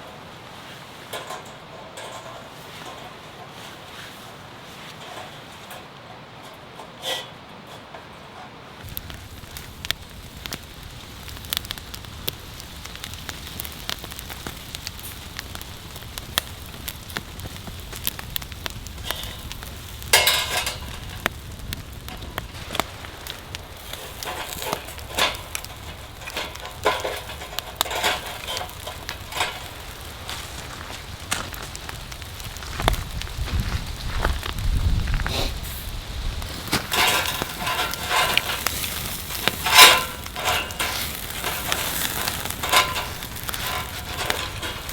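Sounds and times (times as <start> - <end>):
firewood crackling and popping: 0.0 - 44.9.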